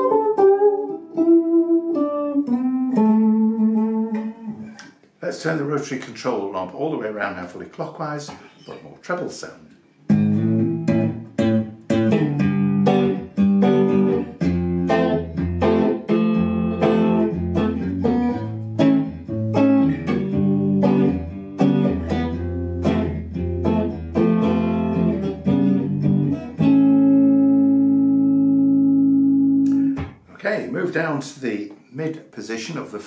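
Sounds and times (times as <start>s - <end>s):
electric guitar playing notes and chords: 0.0s - 4.9s, 10.1s - 30.3s.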